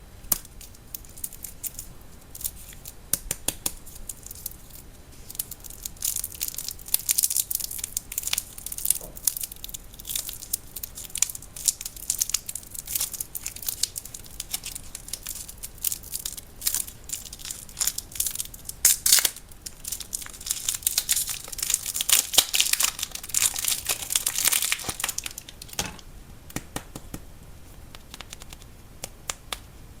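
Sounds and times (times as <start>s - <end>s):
plastic wrapper crinkling: 0.4s - 3.0s, 3.7s - 26.0s.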